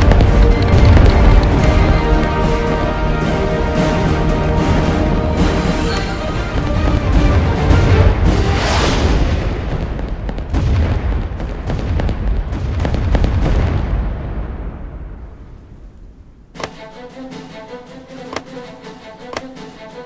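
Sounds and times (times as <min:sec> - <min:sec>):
music: 0:00.0 - 0:09.2, 0:16.6 - 0:20.0
plane engine roar: 0:00.0 - 0:09.3.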